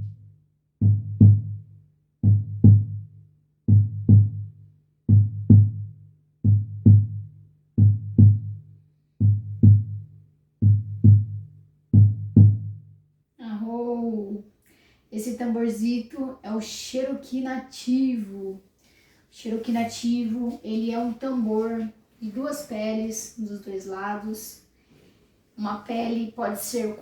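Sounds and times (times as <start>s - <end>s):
hand drum heartbeat rhythm: 0.8s - 3.1s, 3.7s - 12.9s
person speaking: 13.4s - 14.4s, 15.1s - 18.6s, 19.3s - 24.7s, 25.6s - 27.0s.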